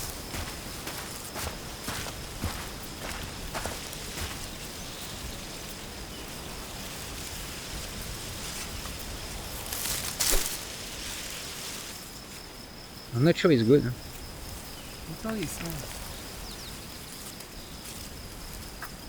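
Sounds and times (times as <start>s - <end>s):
insects chirring: 0.0s - 19.0s
rustle and click: 9.6s - 11.8s.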